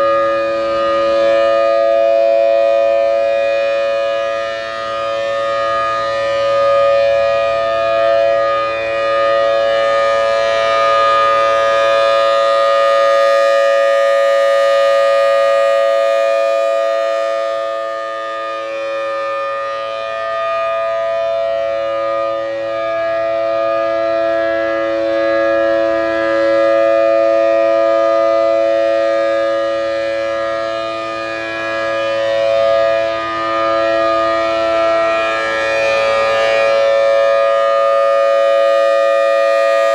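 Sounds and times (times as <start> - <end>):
outdoor warning siren: 0.0 - 39.9.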